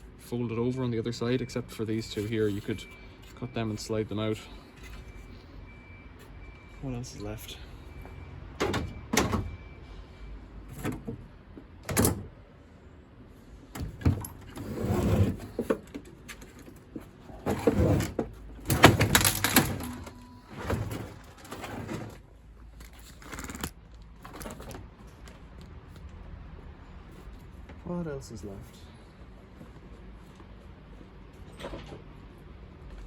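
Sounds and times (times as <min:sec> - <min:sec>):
metal parts knocking and clattering: 0:17.5 - 0:22.2, 0:22.8 - 0:24.8.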